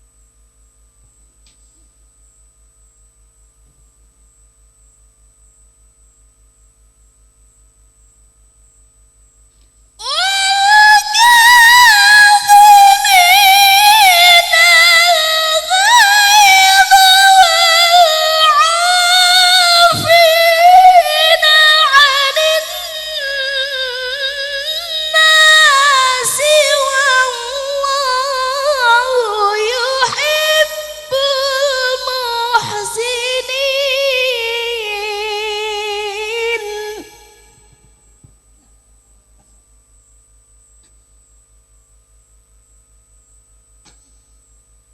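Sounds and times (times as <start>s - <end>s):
person reciting melodically: 10.0s - 37.4s.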